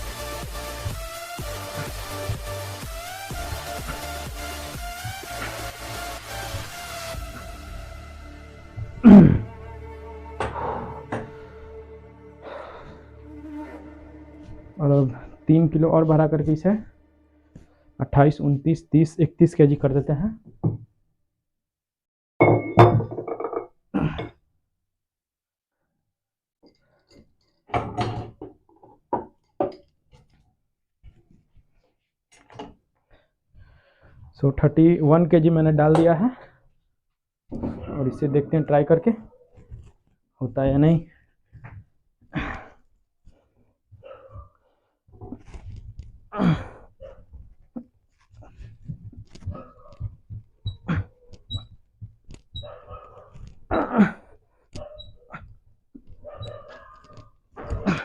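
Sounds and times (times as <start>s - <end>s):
man grunting and breathing: 8.8s - 9.7s, 10.4s - 11.6s, 24.0s - 24.4s, 42.3s - 42.8s, 46.3s - 47.2s, 50.8s - 51.3s, 53.7s - 54.4s, 57.6s - 58.0s.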